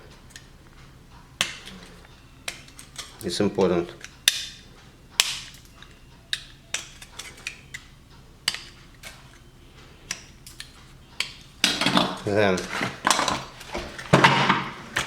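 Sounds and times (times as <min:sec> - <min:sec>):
hand tool clicks: 0:02.4 - 0:04.6, 0:05.2 - 0:09.5, 0:10.1 - 0:11.9.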